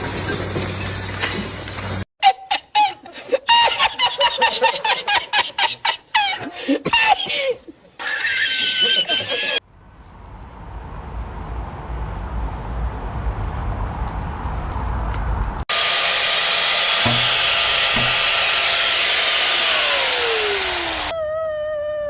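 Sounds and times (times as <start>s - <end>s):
loud machine noise: 15.7s - 21.1s.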